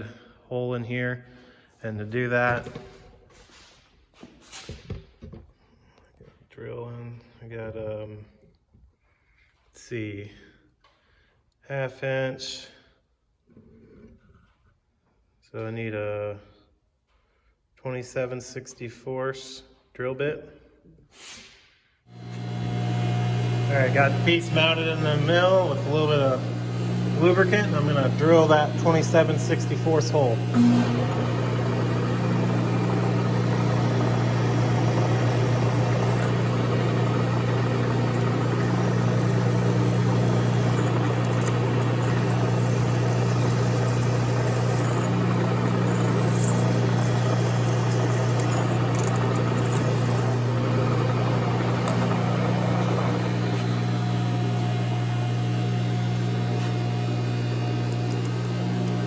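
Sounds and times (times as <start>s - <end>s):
drill bit cutting metal plate: 22.1s - 59.0s
milling machine humming: 22.1s - 59.0s.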